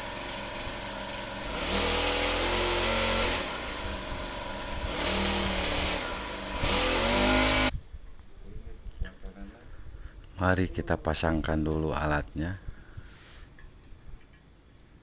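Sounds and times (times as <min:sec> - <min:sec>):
small engine revving: 0:00.0 - 0:07.8.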